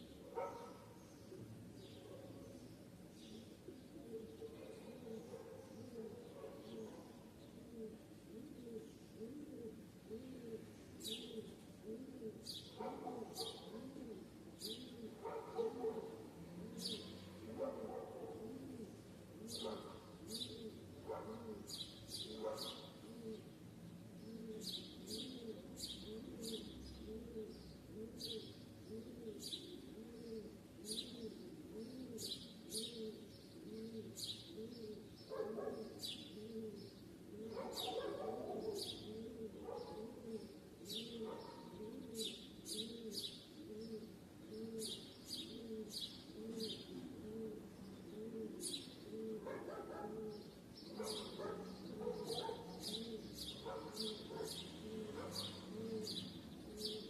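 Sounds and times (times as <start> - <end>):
pigeon cooing low: 0.0 - 57.0
small birds chirping: 12.4 - 23.5, 24.2 - 57.0.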